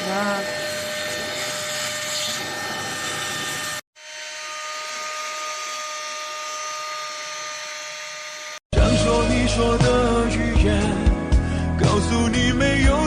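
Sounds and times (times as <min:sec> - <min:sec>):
handheld vacuum cleaner running: 0:00.0 - 0:06.5.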